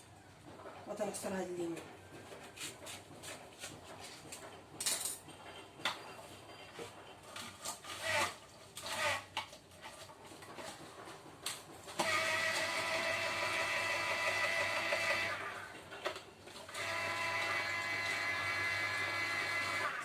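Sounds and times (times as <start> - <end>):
kitchen utensils clattering: 4.0 - 8.0
electric juicer motor humming: 11.8 - 20.0.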